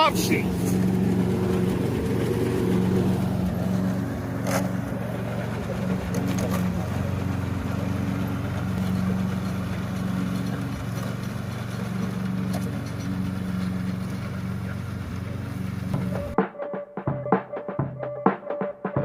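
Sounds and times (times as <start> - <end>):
lawn mower engine humming: 0.0 - 16.4
music with drum hits: 16.0 - 19.0.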